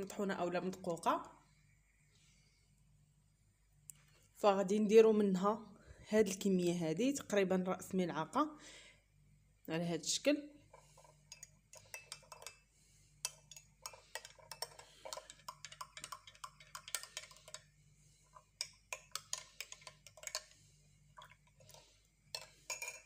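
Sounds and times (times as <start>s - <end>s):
spoon tapping against container: 11.2s - 12.6s, 13.2s - 17.7s, 18.5s - 20.6s.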